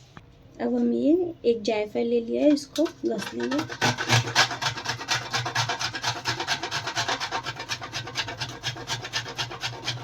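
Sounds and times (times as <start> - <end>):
nutmeg rasping on grater: 3.1 - 10.0.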